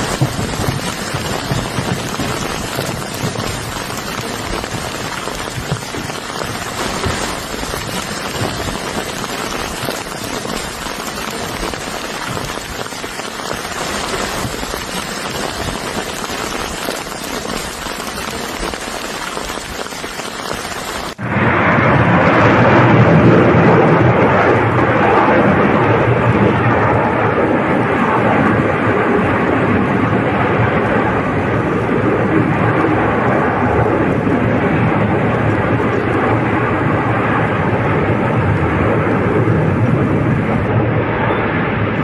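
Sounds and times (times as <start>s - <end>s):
loud steady roar: 0.0s - 12.8s, 21.1s - 42.0s.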